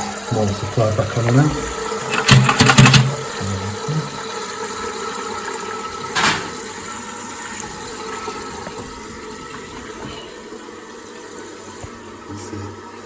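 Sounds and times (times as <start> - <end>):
water refilling toilet cistern: 0.0 - 13.0.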